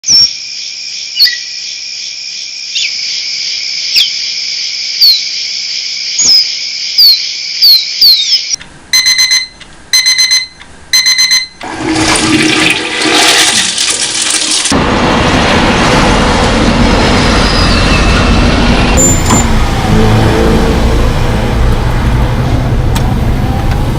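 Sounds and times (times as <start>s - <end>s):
loud dense rushing noise: 14.7s - 23.9s
high-pitched shrill hum: 16.8s - 22.0s
sharp falling whistles: 17.3s - 19.5s
rapid electronic beeping: 18.1s - 19.7s.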